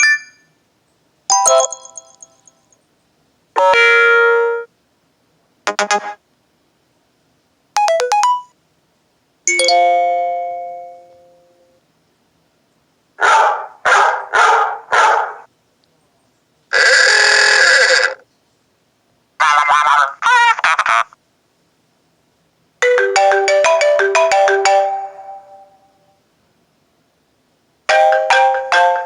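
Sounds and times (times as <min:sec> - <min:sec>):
phone ringtone and alert sounds: 0:00.0 - 0:00.4, 0:01.3 - 0:02.5, 0:05.7 - 0:06.2, 0:07.8 - 0:08.5, 0:09.5 - 0:11.4, 0:22.8 - 0:25.8, 0:27.9 - 0:29.0.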